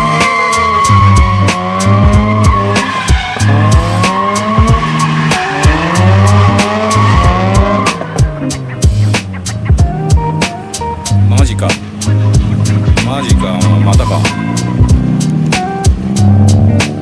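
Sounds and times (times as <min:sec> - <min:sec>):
rotary engine revving hard: 0:00.0 - 0:08.2, 0:11.8 - 0:17.0
tyres squealing: 0:00.0 - 0:08.6
background music with steady beat: 0:00.0 - 0:17.0.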